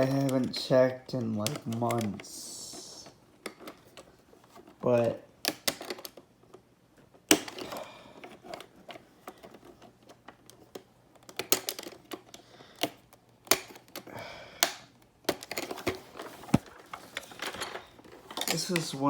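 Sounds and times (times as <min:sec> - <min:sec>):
plastic clicks and knocks: 0:08.5 - 0:18.9.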